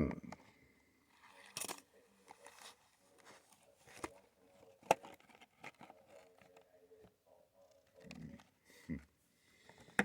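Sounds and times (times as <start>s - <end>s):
cards rustling: 1.2s - 6.7s.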